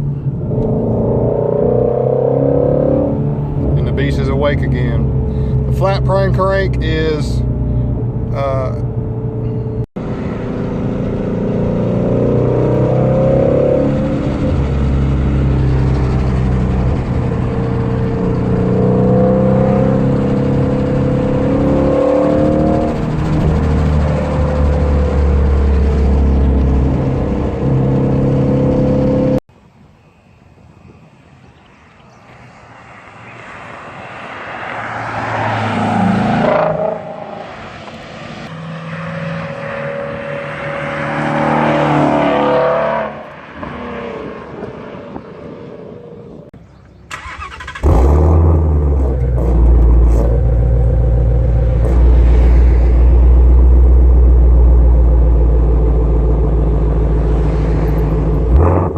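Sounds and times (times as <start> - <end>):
deep car exhaust rumble: 0.0 - 29.4, 47.8 - 58.9.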